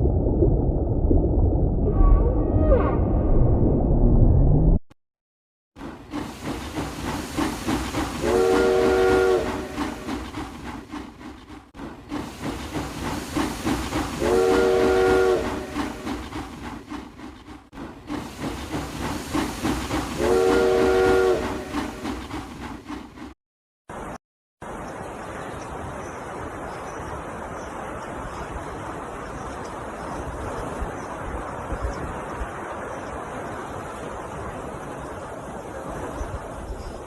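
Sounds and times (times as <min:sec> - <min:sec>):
steam locomotive chugging: 0:05.8 - 0:23.4
train whistle blowing: 0:08.2 - 0:10.1, 0:14.2 - 0:16.0, 0:20.2 - 0:22.0.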